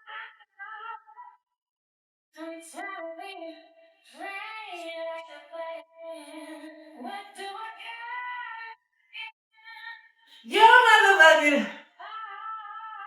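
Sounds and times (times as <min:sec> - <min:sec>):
high voice singing wordlessly: 0:10.5 - 0:11.8.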